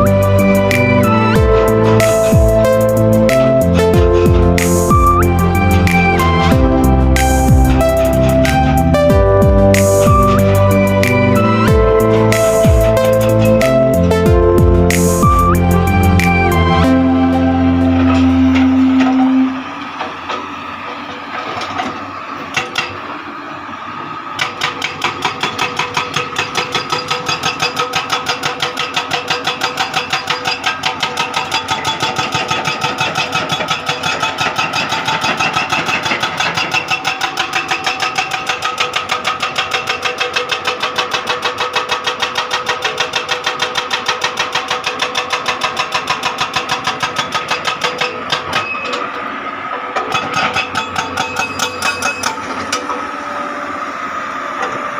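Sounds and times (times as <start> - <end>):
hydraulic excavator running: 0.0 - 54.9
fast mechanical clatter: 24.4 - 49.2.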